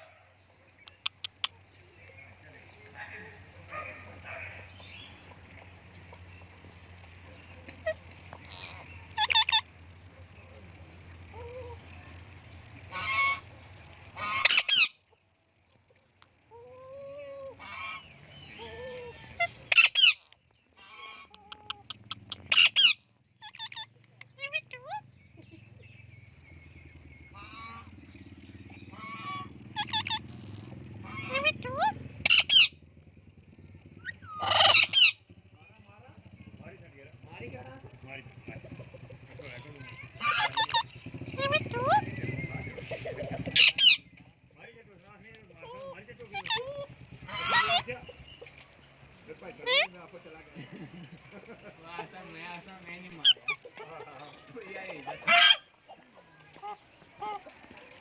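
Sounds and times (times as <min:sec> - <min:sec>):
parrot squawking: 0:07.8 - 0:09.6, 0:12.9 - 0:13.4, 0:14.2 - 0:15.0, 0:18.9 - 0:25.0, 0:28.9 - 0:30.4, 0:31.0 - 0:32.7, 0:34.0 - 0:35.2, 0:39.5 - 0:42.7, 0:43.4 - 0:44.0, 0:45.7 - 0:47.9, 0:55.2 - 0:55.7
high-pitched pulsing chirp: 0:21.4 - 0:50.5.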